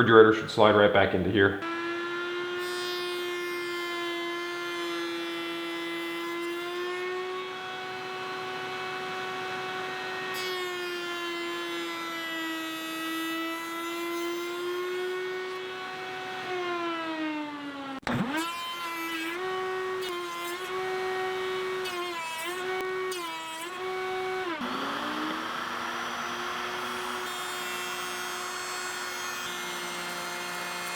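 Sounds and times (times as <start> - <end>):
electric power drill whining: 15.6 - 30.9.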